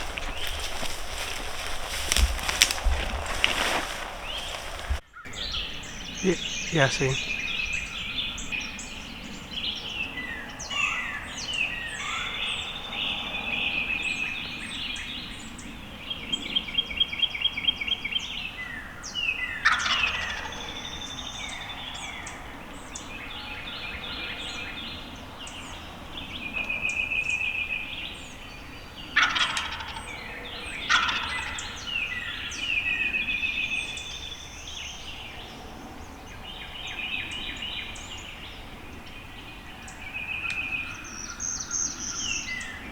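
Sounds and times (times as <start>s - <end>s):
songbirds chirping: 0.0s - 42.9s
turkey gobbling: 19.6s - 20.5s, 29.2s - 32.6s.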